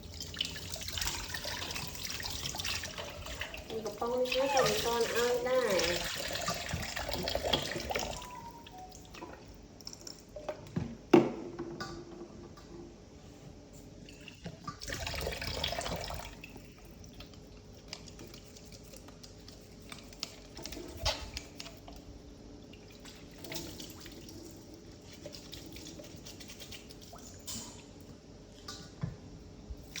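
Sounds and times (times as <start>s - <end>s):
water running and dripping: 0.0s - 10.4s.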